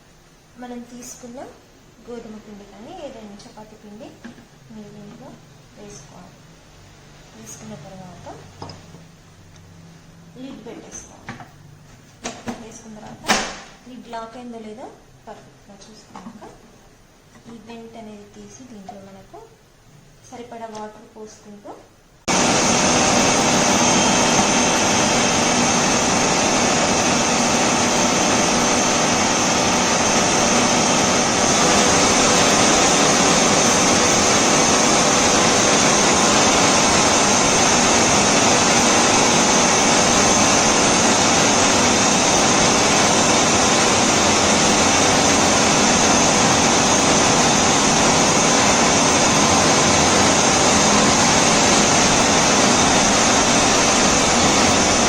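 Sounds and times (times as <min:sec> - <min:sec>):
food processor motor whirring: 0:22.3 - 0:55.0.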